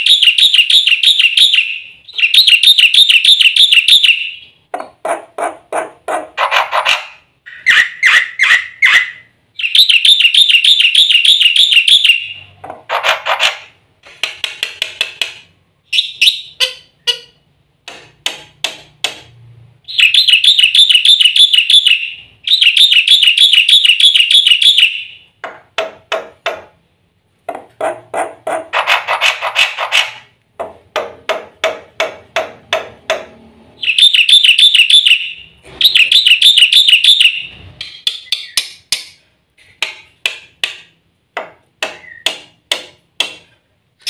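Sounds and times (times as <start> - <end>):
starling singing: 0.0 - 4.5, 6.2 - 12.6, 19.9 - 25.3, 33.8 - 38.8, 42.0 - 42.4.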